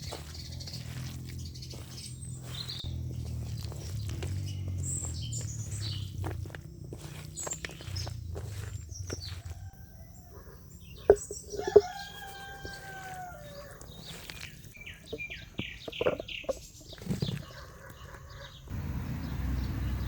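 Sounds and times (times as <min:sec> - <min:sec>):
rooster crowing: 0:08.5 - 0:14.0.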